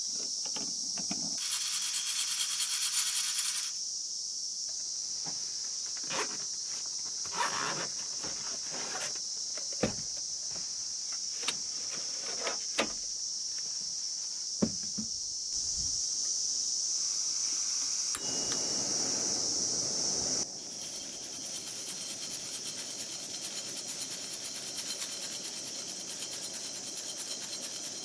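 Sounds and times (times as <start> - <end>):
crickets chirping: 0.0 - 28.0
soft rushing noise: 18.1 - 21.2.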